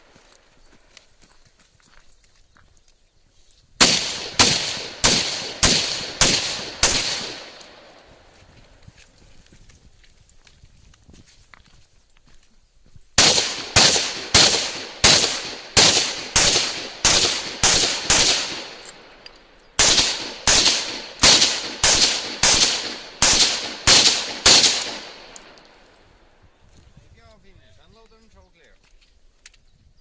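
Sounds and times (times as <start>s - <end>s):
rifle shots echoing: 3.8s - 8.2s, 13.2s - 25.9s.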